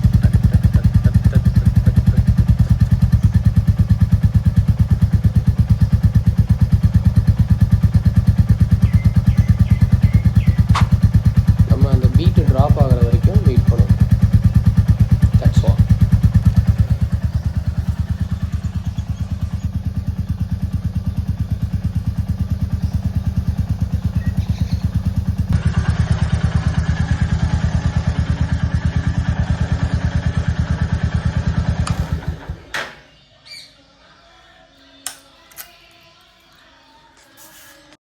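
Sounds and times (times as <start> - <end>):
motorcycle engine idling: 0.0 - 33.6.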